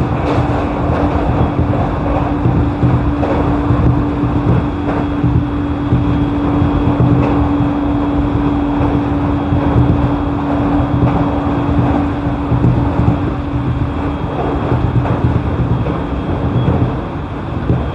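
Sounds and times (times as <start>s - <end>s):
steady train hum: 0.0s - 17.9s
train wheels rumbling on rails: 0.0s - 17.9s.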